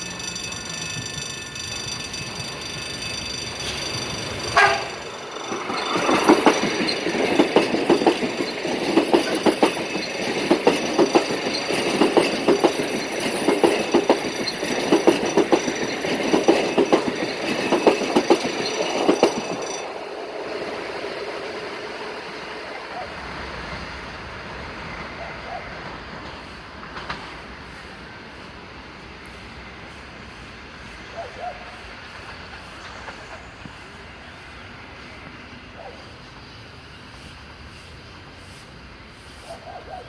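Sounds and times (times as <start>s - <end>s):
train wheels clacking over rail joints: 0.0s - 24.0s, 25.7s - 28.4s
passing train rumble: 0.0s - 40.0s.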